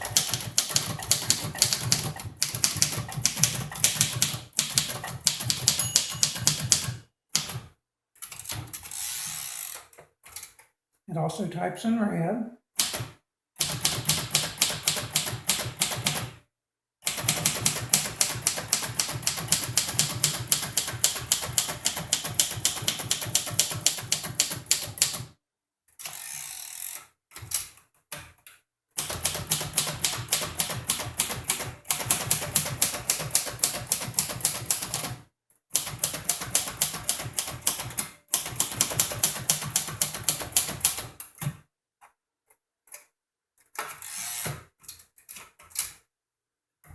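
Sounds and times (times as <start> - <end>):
typewriter keystrokes: 0.0 - 7.6, 12.8 - 16.3, 17.1 - 25.2, 29.0 - 35.1, 35.8 - 41.2.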